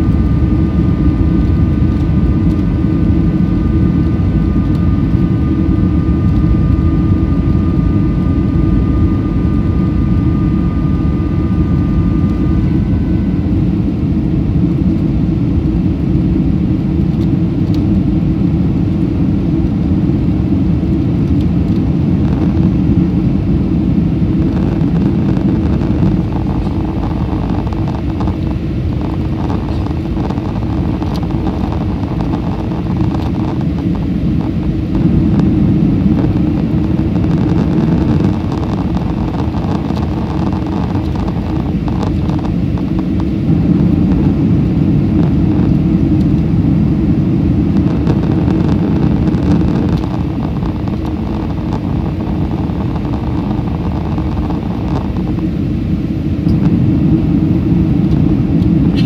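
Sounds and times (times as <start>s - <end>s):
airplane cabin engine rumble: 0.0s - 59.0s.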